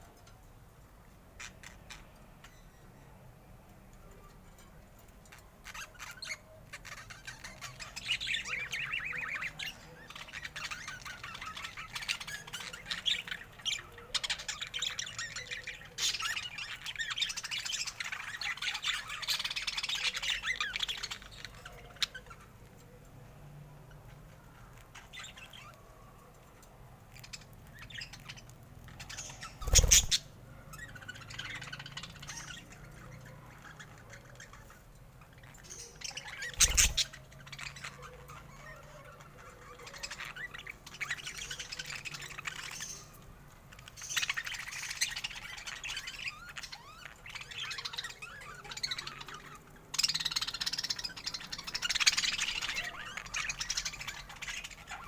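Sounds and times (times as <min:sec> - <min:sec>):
budgerigars chattering: 0:27.2 - 0:34.8, 0:35.4 - 0:55.0.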